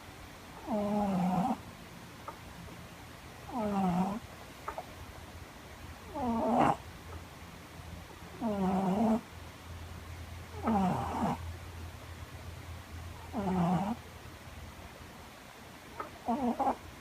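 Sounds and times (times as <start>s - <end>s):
faint low hum: 0.0s - 17.0s
cat snoring: 0.6s - 1.6s, 3.5s - 4.2s, 6.1s - 6.8s, 8.4s - 9.2s, 10.5s - 11.4s, 13.2s - 14.0s, 16.2s - 16.8s.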